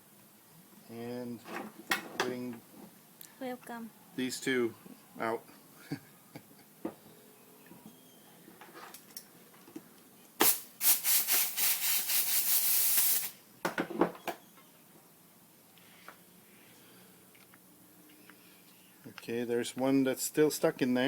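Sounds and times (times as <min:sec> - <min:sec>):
compressed air blast: 0:10.4 - 0:13.4
loud air hiss: 0:10.4 - 0:13.4.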